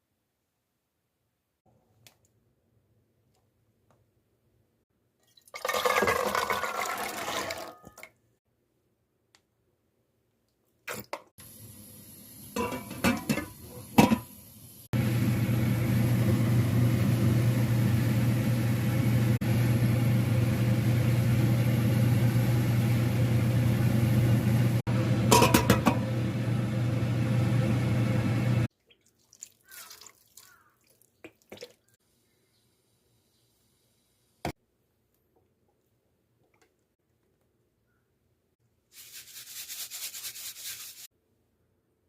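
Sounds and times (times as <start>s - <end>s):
low hum: 15.0s - 28.7s.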